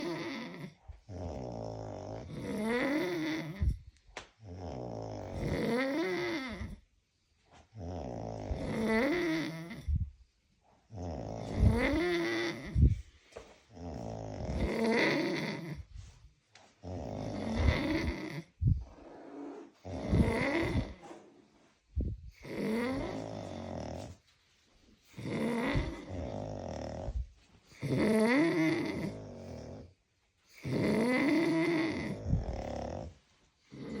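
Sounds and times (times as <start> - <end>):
men snoring: 0.0 - 3.8, 4.5 - 6.8, 7.8 - 10.0, 10.9 - 12.9, 13.8 - 15.8, 16.8 - 18.5, 19.2 - 21.0, 22.4 - 24.1, 25.2 - 27.2, 27.8 - 29.9, 30.6 - 33.1
quiet breaths: 0.0 - 34.0.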